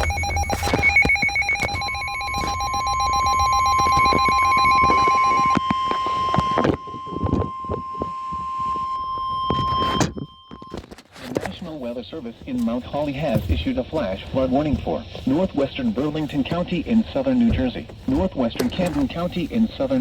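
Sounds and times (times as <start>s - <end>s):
pulsing ringing alert tone: 0.0s - 10.8s
steady single alarm tone: 0.0s - 10.8s
crackling radio static: 0.0s - 20.0s.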